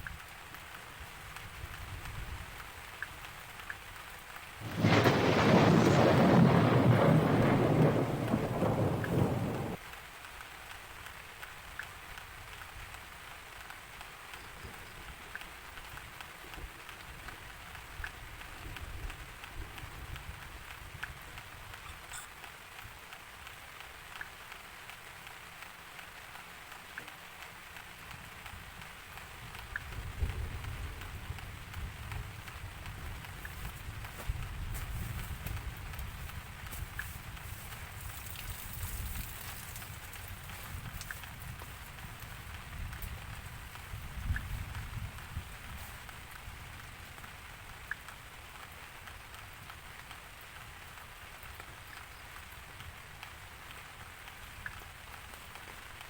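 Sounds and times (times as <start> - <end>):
raindrop ticks: 0.0 - 56.0
steady rain: 0.0 - 56.0
thunderclap rumbling: 4.6 - 9.8.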